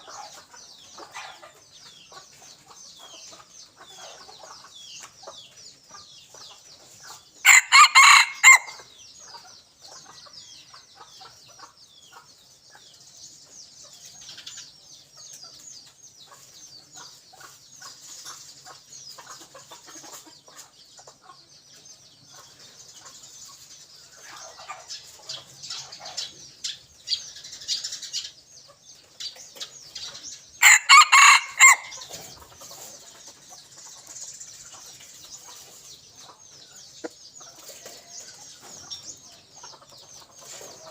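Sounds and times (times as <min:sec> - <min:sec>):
birds and insects chirping: 0:00.0 - 0:40.9
rooster crowing: 0:07.5 - 0:08.8, 0:30.6 - 0:32.0.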